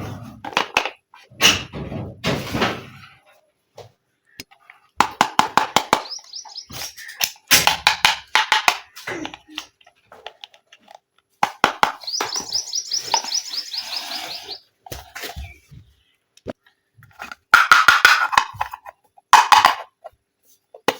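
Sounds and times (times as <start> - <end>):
rapid high chirping squeaks: 5.8 - 7.5, 11.9 - 14.7.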